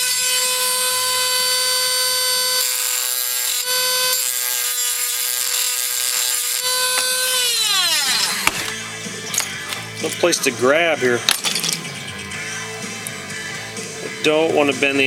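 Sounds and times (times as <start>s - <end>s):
rotary tool whining: 0.0s - 10.3s.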